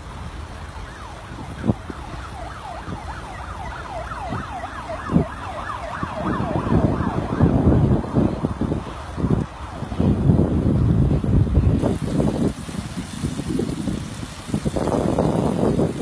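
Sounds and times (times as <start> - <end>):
siren wailing: 0.8 - 8.2.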